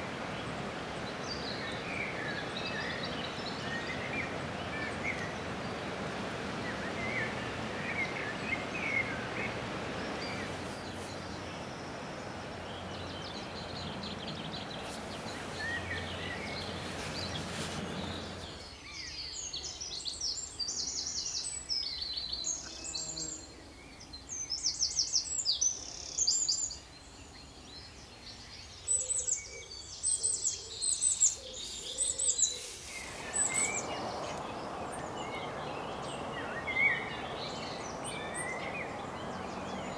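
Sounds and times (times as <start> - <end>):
steady rushing noise: 0.0 - 18.7, 32.3 - 39.9
small birds chirping: 0.0 - 39.9.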